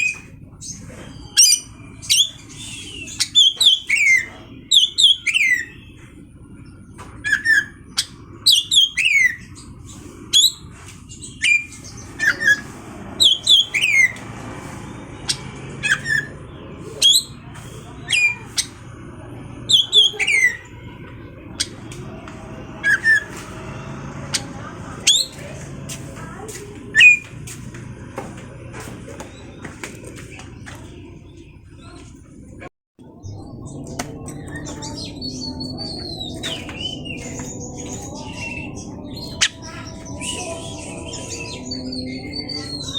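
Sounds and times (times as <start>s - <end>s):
low background hum: 0.0s - 42.9s
bird singing whistled notes: 1.3s - 5.9s.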